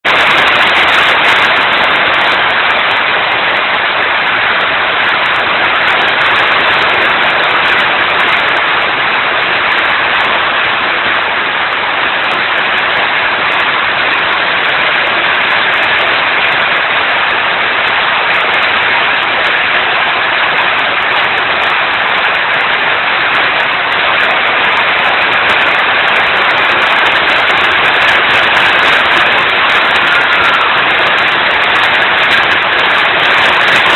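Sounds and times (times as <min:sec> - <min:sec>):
heavy rain pouring: 0:00.0 - 0:33.9.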